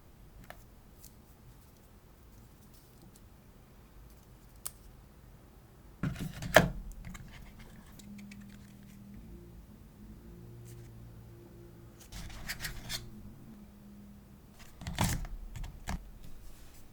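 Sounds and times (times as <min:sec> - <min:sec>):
phone packaging handled: 0:06.0 - 0:09.1, 0:12.1 - 0:13.3, 0:14.6 - 0:16.5.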